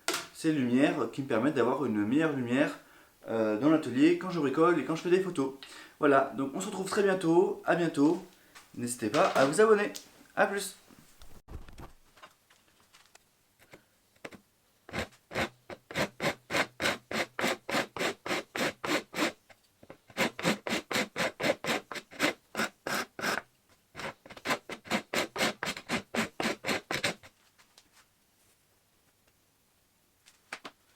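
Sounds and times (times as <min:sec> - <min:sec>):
wood rasp on wood: 0:14.9 - 0:27.3.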